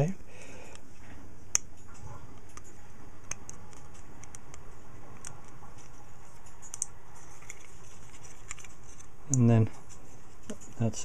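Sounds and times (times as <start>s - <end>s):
low background hum: 0.0s - 11.0s
metal clicks and taps: 6.4s - 7.6s.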